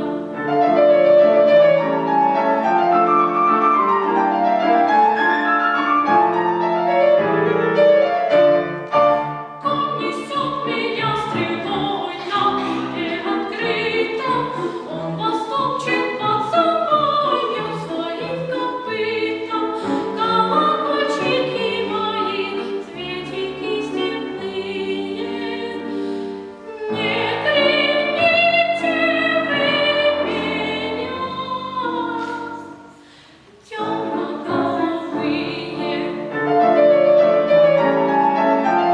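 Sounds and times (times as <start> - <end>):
piano accompaniment: 0.0 - 38.9
child singing classically: 9.6 - 23.8.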